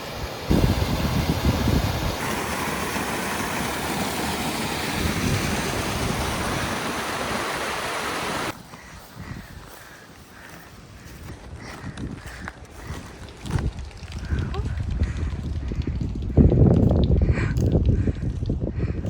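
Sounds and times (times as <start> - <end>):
rushing water: 0.0 - 8.9
wind buffeting microphone: 0.2 - 19.0.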